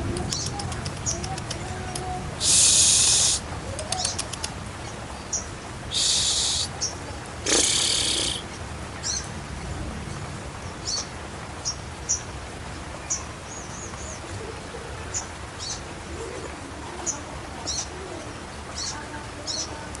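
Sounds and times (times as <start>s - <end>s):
steady background hiss: 0.0s - 20.0s
bird chirping: 0.3s - 9.3s, 10.1s - 12.3s
wavering bird call: 2.4s - 4.2s, 5.9s - 8.5s.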